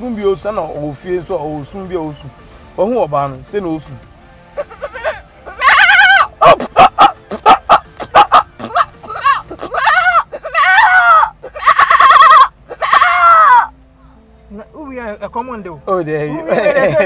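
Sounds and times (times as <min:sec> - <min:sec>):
man imitating animal calls: 0:04.6 - 0:13.7.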